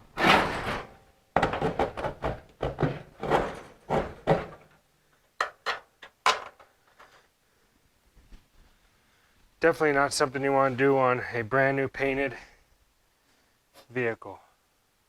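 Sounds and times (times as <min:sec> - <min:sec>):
sheet metal scraping and knocking: 0:00.0 - 0:04.7.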